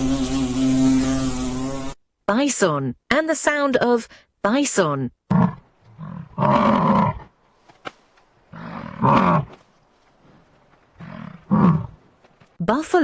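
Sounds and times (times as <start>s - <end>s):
bison bellowing: 8.5s - 9.6s, 11.0s - 12.1s.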